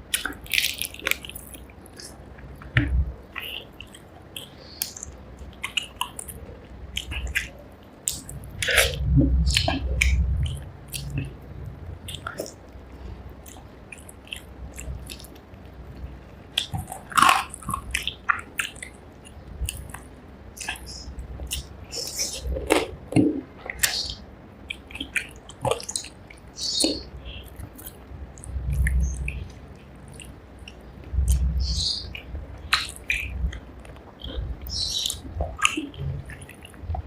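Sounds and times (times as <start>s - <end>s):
low thumping rumble: 2.5s - 3.2s, 8.3s - 13.4s
wet chewing and lip smacks: 13.4s - 15.4s, 32.6s - 36.9s.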